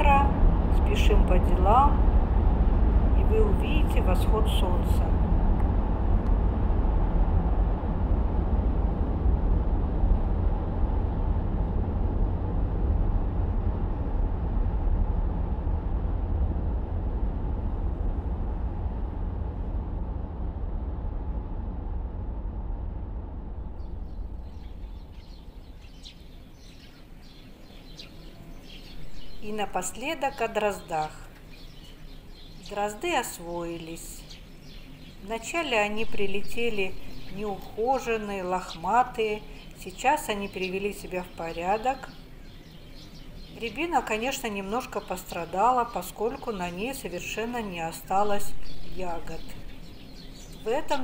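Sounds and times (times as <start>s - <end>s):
faint bird chirps: 23.5s - 51.0s.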